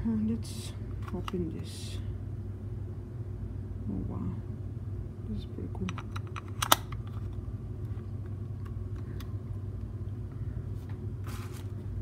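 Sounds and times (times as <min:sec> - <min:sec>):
steady low hum: 0:00.0 - 0:12.0
packaging rustle: 0:11.2 - 0:11.8.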